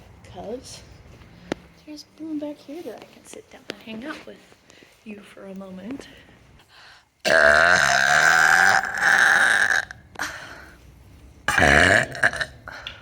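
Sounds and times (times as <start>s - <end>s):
person burping: 7.2s - 10.5s, 11.5s - 12.9s.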